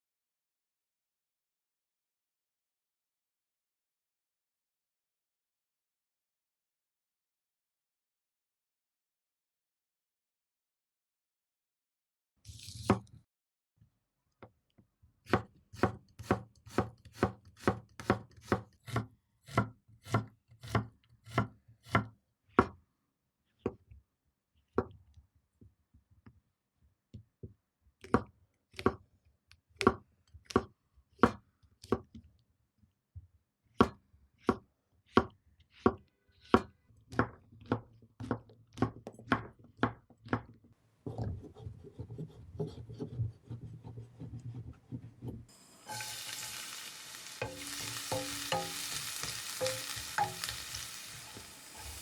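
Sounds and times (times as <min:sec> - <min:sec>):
knife chopping on cutting board: 0:15.3 - 0:22.8, 0:28.0 - 0:29.0, 0:29.8 - 0:32.2, 0:33.7 - 0:40.5, 0:47.4 - 0:52.0
pan sizzling: 0:45.5 - 0:52.0.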